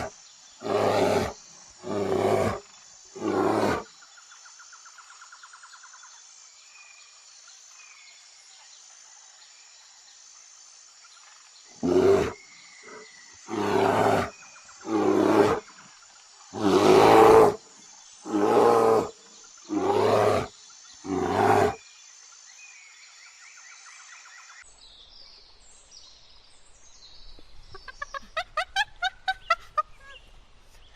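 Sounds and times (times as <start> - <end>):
large animal roaring: 0.0 - 2.6, 3.2 - 3.9, 11.8 - 12.4, 13.5 - 15.6, 16.6 - 17.6, 18.3 - 19.1, 19.7 - 20.5, 21.1 - 21.8
birds: 0.0 - 30.9
insects chirring: 0.0 - 30.9.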